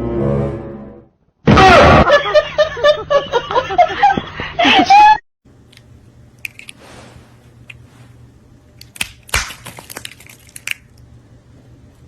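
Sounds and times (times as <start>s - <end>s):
clicks and crunching: 8.8s - 11.1s.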